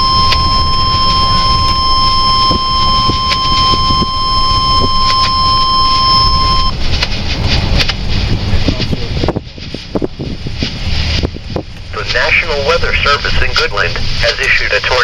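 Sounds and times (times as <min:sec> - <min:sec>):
high alert beep through radio: 0:00.0 - 0:06.8, 0:12.0 - 0:15.0
vehicle road rumble: 0:00.0 - 0:15.0.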